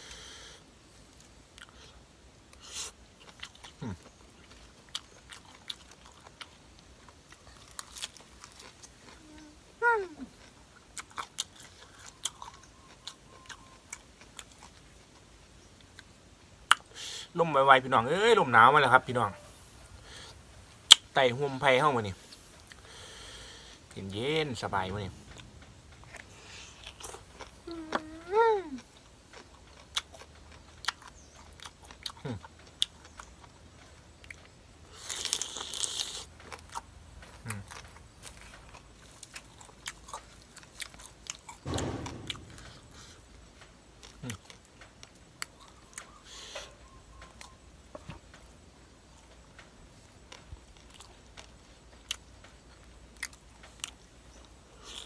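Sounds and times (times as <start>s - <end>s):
chewing and crunching: 1.0s - 18.0s, 18.8s - 42.4s, 43.9s - 55.0s.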